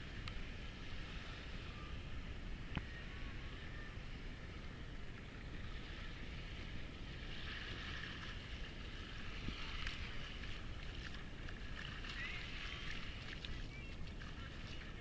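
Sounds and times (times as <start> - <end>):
wind on microphone: 0.0 - 15.0
surf hissing: 5.6 - 15.0.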